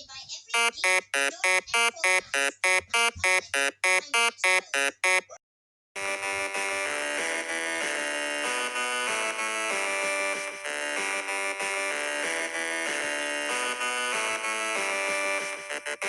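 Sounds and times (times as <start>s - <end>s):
pulsing electronic buzzer beeps: 0.5s - 5.4s
steady synthesized chord tone: 6.0s - 12.5s.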